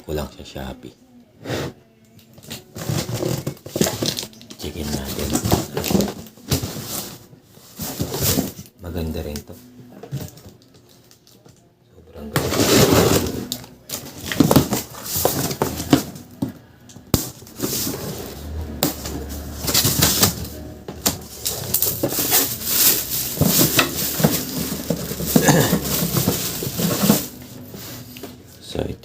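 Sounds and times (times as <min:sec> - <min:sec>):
packaging rustling and crinkling: 0:02.4 - 0:09.4, 0:12.4 - 0:16.5, 0:17.1 - 0:28.4.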